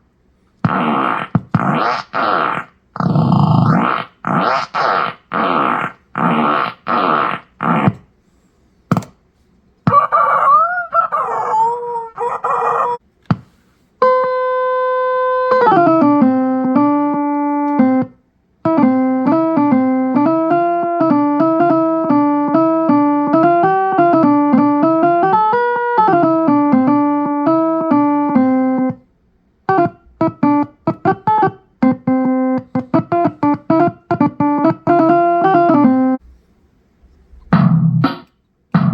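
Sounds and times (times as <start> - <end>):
buzzy electronic theremin tone: 0.6 - 8.0.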